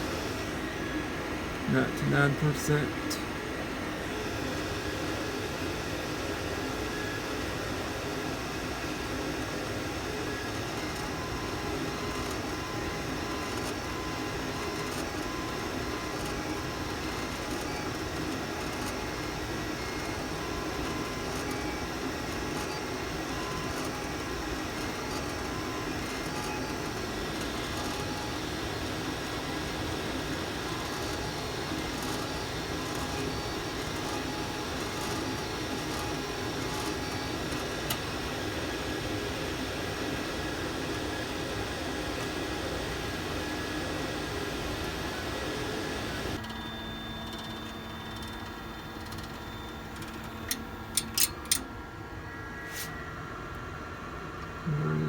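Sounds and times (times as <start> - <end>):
stepper motor tones: 0.0 - 38.5
cooling fans whirring: 0.0 - 55.0.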